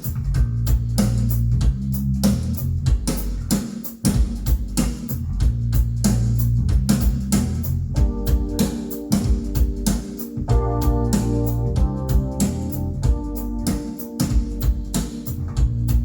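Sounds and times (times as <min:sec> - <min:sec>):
instrumental rock music: 0:08.0 - 0:16.0
organ: 0:08.0 - 0:16.0.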